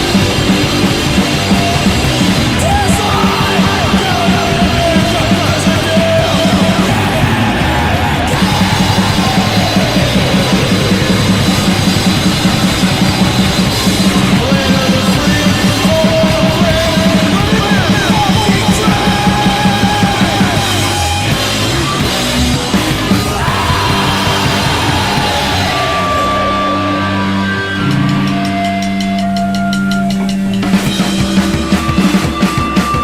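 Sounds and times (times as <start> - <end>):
drum kit beat: 0.0 - 33.0
punk rock band playing: 0.0 - 33.0.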